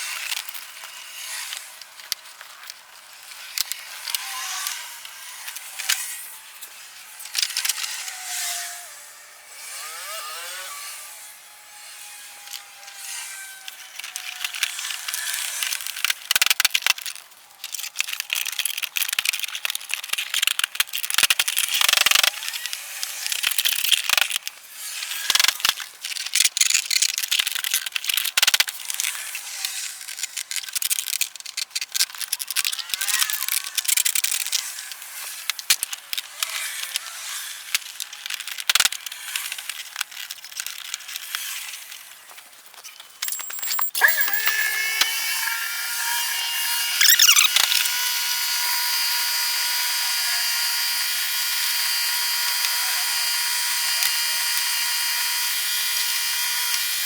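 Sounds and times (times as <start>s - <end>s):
plastic scraping and rattling: 13.6s - 45.2s
short squeaks: 42.8s - 45.7s, 47.0s - 47.8s
knocks and clicks: 43.2s - 44.9s.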